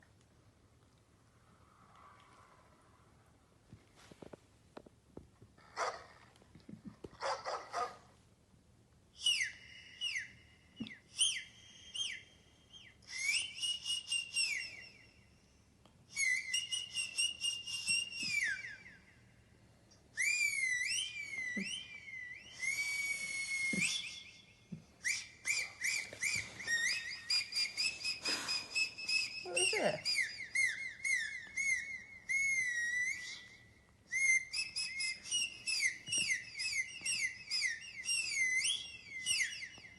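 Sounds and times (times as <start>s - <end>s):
high-pitched whistling: 9.2s - 39.9s.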